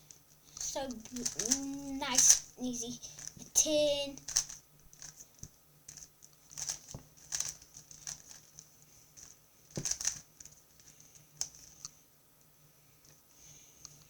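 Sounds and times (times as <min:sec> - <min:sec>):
puzzle cube clicking and rattling: 0:00.6 - 0:03.6, 0:04.2 - 0:11.8.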